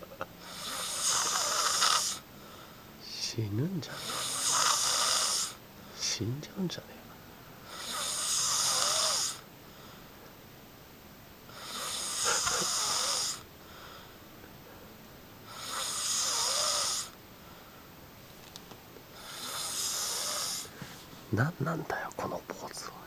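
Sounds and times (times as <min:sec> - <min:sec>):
person snoring loudly: 0:00.4 - 0:02.2, 0:04.0 - 0:05.6, 0:07.7 - 0:09.4, 0:11.5 - 0:13.5, 0:15.5 - 0:17.2, 0:19.2 - 0:20.7.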